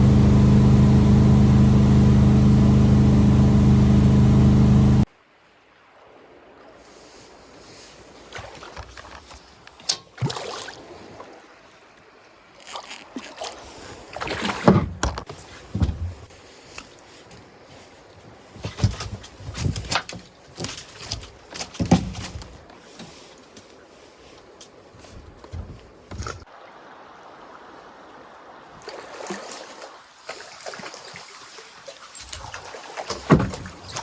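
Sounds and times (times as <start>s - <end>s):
water knocks and splashes: 8.2s - 10.8s, 14.2s - 16.3s, 18.6s - 23.2s, 28.8s - 34.0s.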